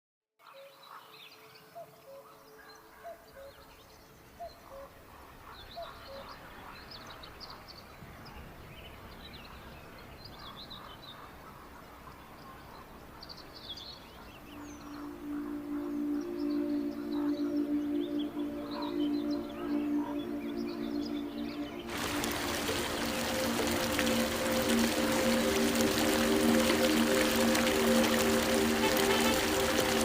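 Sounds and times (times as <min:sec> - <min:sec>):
birds chirping: 0:12.2 - 0:30.0.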